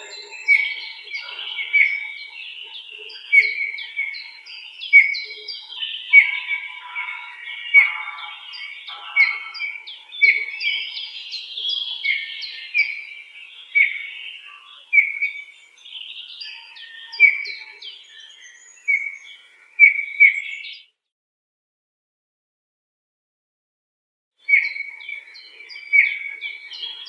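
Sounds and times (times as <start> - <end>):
sharp downward-sliding bird notes: 0.0 - 2.9
birds chirping and calling: 0.0 - 20.9, 24.4 - 27.0.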